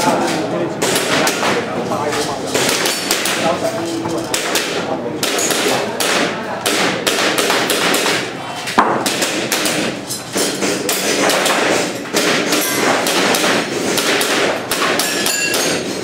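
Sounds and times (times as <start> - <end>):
airsoft pistol shots: 4.3 - 8.3, 11.0 - 15.2.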